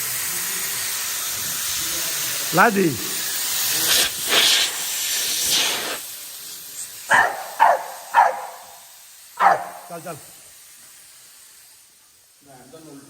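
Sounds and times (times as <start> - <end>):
spraying hiss: 0.0 - 13.0
dog barking: 7.1 - 8.8, 9.4 - 9.9.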